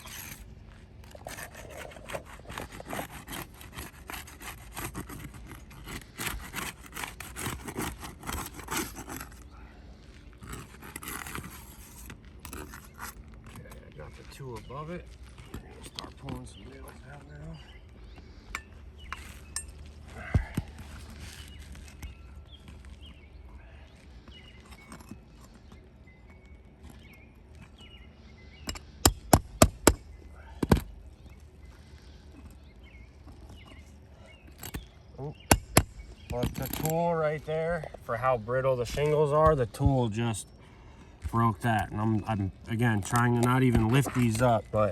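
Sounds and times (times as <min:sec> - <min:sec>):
tool scraping under shingles: 0:00.0 - 0:44.9
tool striking roofing nails: 0:28.7 - 0:30.9, 0:34.6 - 0:36.9.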